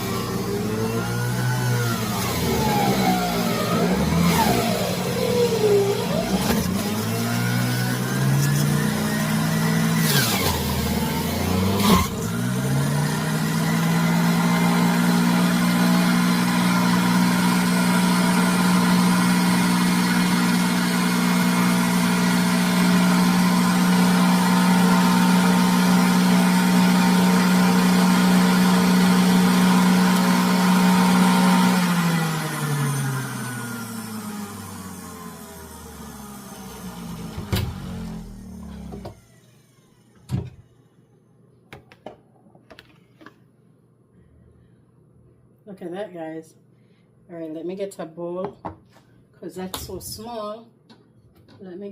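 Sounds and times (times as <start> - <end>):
juicer motor humming: 0.0 - 39.8.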